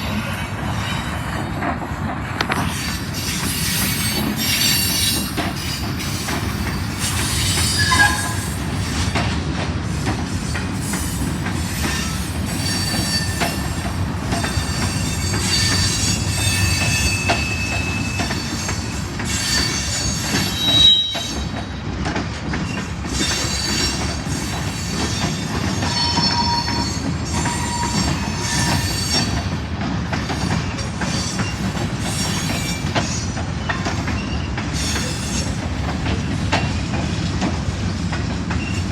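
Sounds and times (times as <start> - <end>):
railroad cars rumbling and clanking: 0.0 - 38.9
high-pitched wheel squeals: 2.6 - 8.6, 10.8 - 21.6, 23.1 - 29.5.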